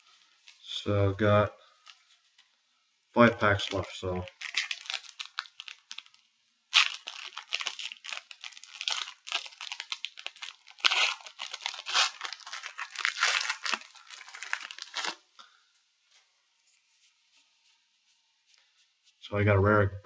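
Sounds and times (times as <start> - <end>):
foil wrapper tearing and crinkling: 3.6 - 15.3.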